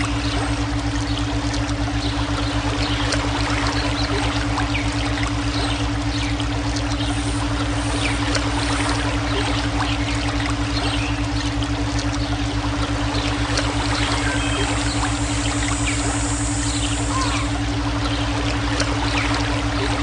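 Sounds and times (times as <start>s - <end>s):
fast-pulsing low drone: 0.0s - 20.0s
stream water trickling: 0.0s - 20.0s
steady electronic tone: 6.9s - 9.4s, 13.6s - 17.9s.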